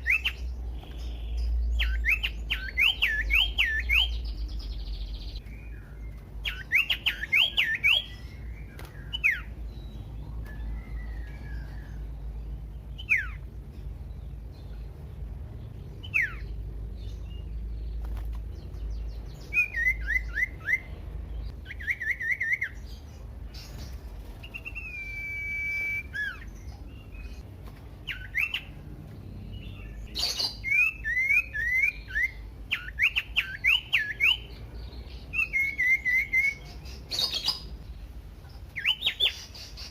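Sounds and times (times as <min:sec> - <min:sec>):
bird singing whistled notes: 0:00.0 - 0:13.5, 0:16.0 - 0:18.0, 0:18.6 - 0:38.0, 0:38.8 - 0:39.9.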